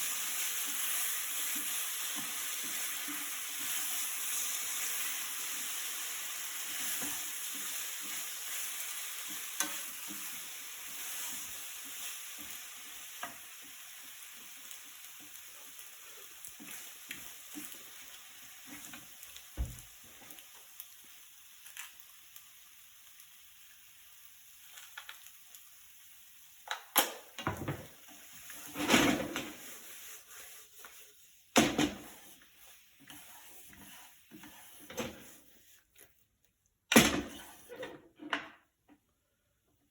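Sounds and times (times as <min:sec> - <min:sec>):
food sizzling in a frying pan: 0:00.0 - 0:36.4, 0:37.2 - 0:37.9
utensil scraping a pan: 0:28.4 - 0:35.8.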